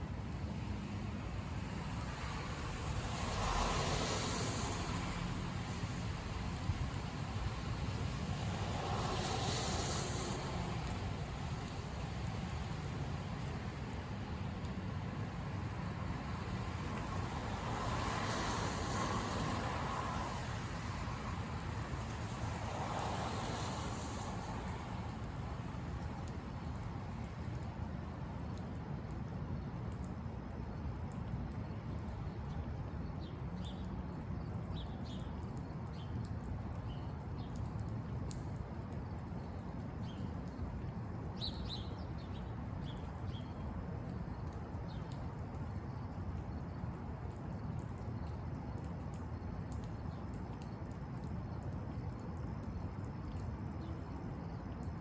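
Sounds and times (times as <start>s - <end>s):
road and tyre noise: 0.0s - 55.0s
rain hissing: 1.0s - 14.4s, 16.7s - 26.8s.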